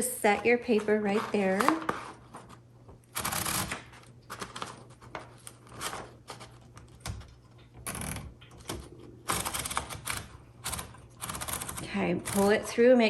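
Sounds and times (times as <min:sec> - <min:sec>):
paper rustling and sliding: 0:00.3 - 0:02.6, 0:03.4 - 0:06.8
typewriter platen rasps and clicks: 0:03.1 - 0:04.8, 0:05.6 - 0:12.7.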